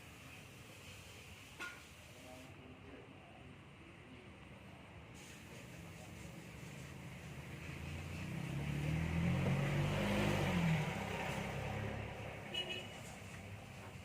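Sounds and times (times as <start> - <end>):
vehicle engine passing by: 6.0 - 14.0.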